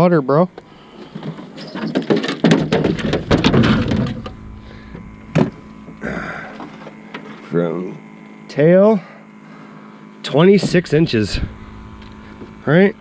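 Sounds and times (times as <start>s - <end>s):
handling clicks and rustles: 0.5s - 7.4s.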